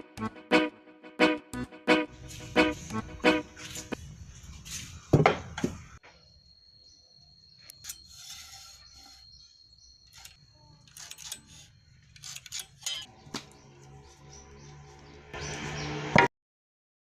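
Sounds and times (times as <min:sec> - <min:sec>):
rubbing and scraping strokes: 0:02.1 - 0:05.1, 0:07.8 - 0:13.1.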